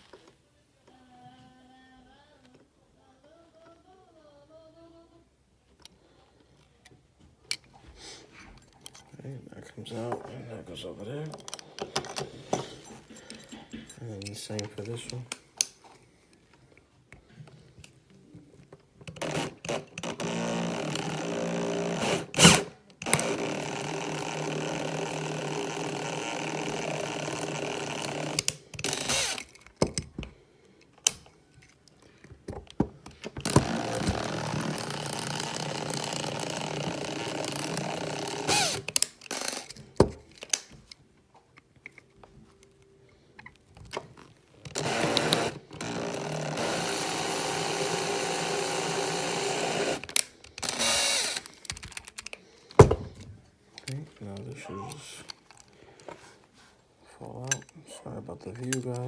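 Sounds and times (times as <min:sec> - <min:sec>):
small power drill running: 0:19.2 - 0:29.5, 0:33.4 - 0:39.8, 0:44.7 - 0:51.5.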